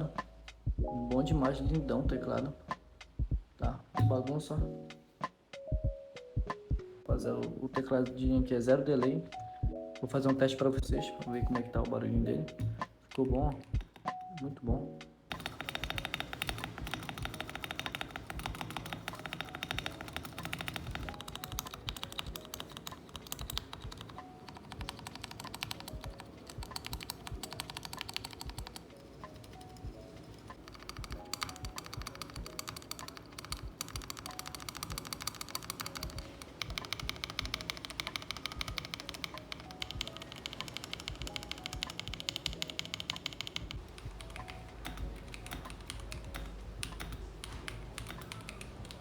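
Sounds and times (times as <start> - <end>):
mechanical keyboard key clacks: 13.5 - 14.2, 15.3 - 49.0.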